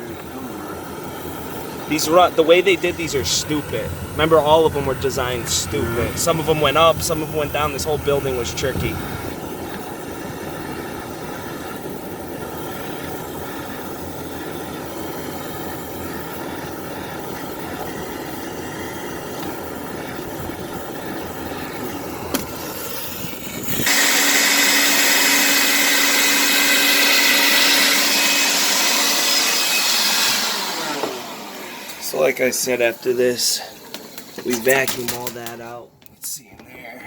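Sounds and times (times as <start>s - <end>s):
air machine whining: 0.0s - 36.7s
air rushing through vent: 0.5s - 25.3s.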